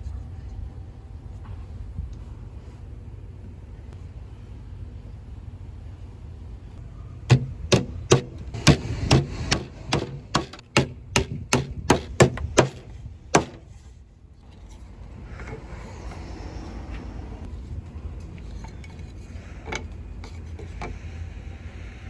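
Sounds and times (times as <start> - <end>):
hammer striking wood: 7.3 - 13.8.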